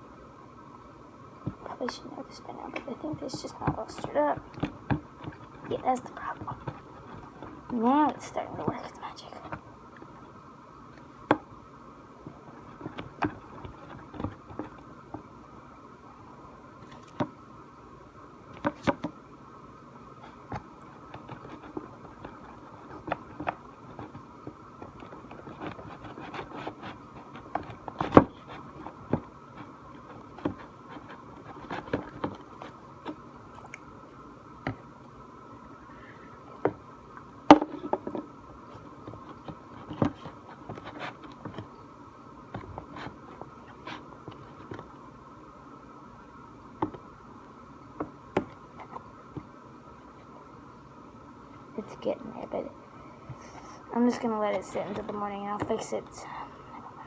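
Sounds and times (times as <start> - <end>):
stick stirring thick slime: 1.5 - 9.6, 12.4 - 15.3, 20.2 - 33.8, 37.6 - 41.7.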